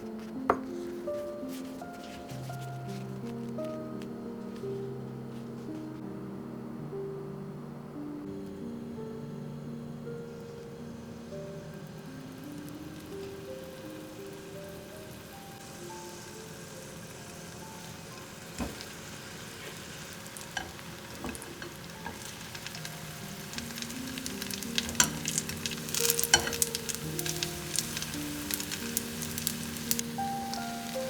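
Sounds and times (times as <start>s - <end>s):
food frying in oil: 11.0s - 31.0s.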